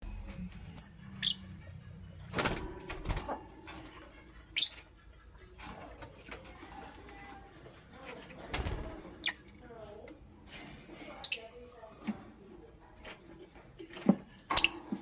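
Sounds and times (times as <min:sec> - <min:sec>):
lovebirds chirping: 0:00.0 - 0:15.0
wing flapping: 0:02.1 - 0:04.7, 0:05.6 - 0:09.4.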